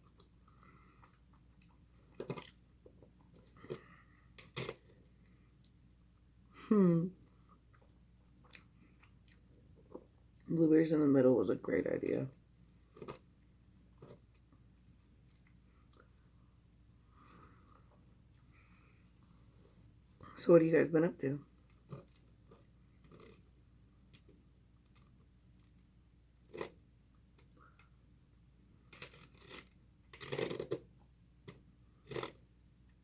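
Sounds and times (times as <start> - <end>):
mouth smacks and clicks chewing: 7.7 - 10.5.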